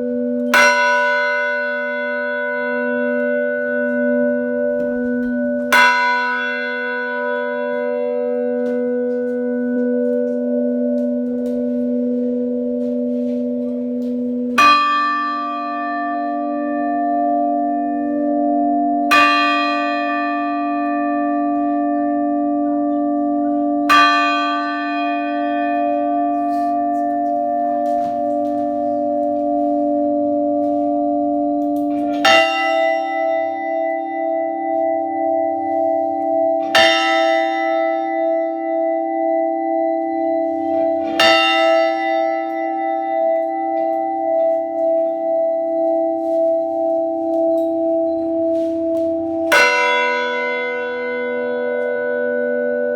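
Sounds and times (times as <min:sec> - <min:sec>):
church bell tolling: 0:00.0 - 0:52.9
higher-pitched bell ringing: 0:23.5 - 0:52.9.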